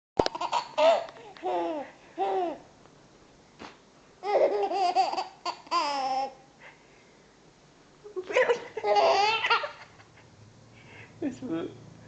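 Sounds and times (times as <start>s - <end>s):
baby laughing: 0.2s - 2.6s, 4.2s - 6.4s, 8.2s - 10.1s.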